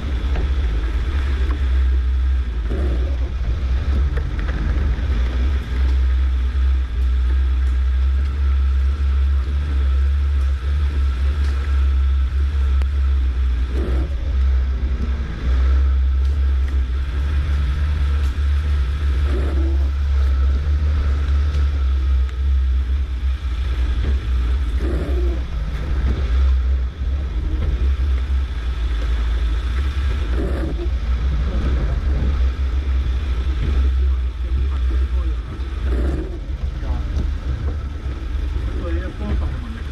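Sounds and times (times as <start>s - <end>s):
vehicle engine rumbling: 0.0s - 39.9s.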